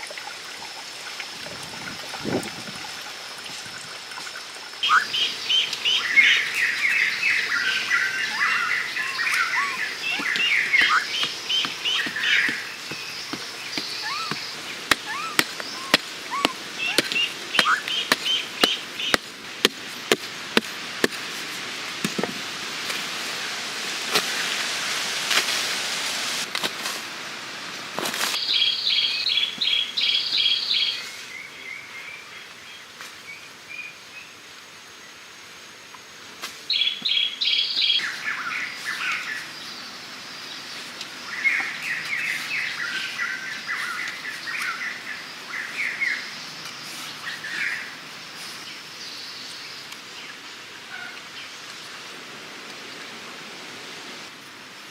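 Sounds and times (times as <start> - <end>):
rushing hiss: 1.7 - 28.5
small birds chirping: 4.8 - 20.3, 28.4 - 34.4, 36.7 - 51.8.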